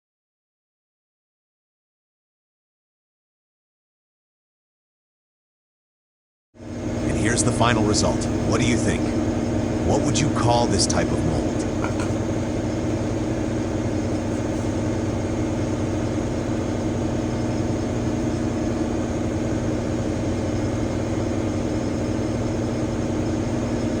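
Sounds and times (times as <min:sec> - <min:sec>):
milling machine humming: 0:06.6 - 0:24.0.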